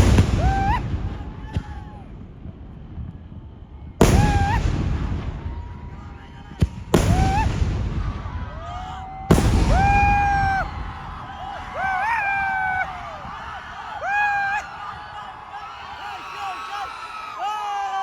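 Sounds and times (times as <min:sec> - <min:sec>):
sharp firework crack: 0:00.0 - 0:03.2, 0:04.0 - 0:12.5
firework blasts with rumbling tail: 0:00.0 - 0:14.1.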